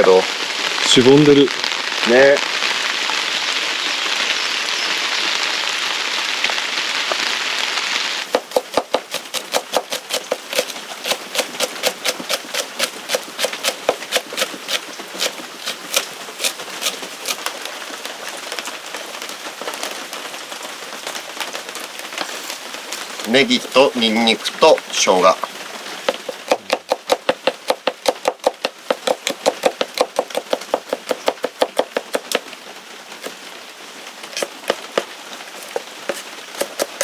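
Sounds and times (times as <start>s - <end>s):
rain hiss: 0.0s - 26.8s, 32.3s - 37.0s
knife chopping on cutting board: 8.3s - 17.4s, 26.1s - 32.4s, 34.4s - 37.0s.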